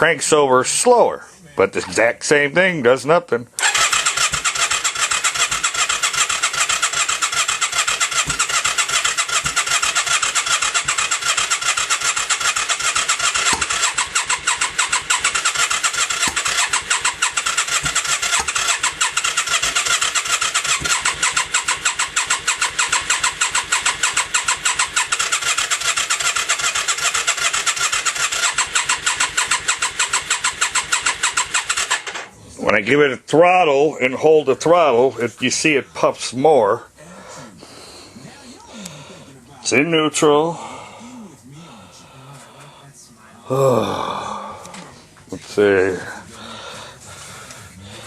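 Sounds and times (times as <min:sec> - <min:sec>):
engine cranking on starter: 0:03.6 - 0:32.4.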